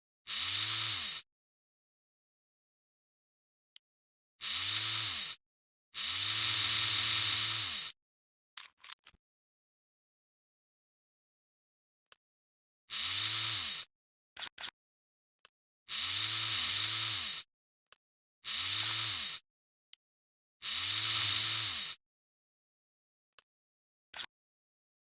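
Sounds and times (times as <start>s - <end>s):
rasping whirring tool: 0.3s - 1.3s, 4.4s - 5.4s, 6.0s - 8.0s, 12.9s - 14.8s, 15.9s - 17.5s, 18.4s - 19.5s, 20.6s - 22.0s, 24.1s - 24.4s.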